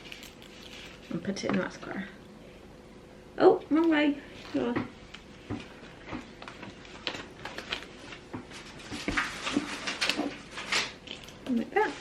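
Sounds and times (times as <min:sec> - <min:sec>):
paper rustling: 0:05.6 - 0:11.0.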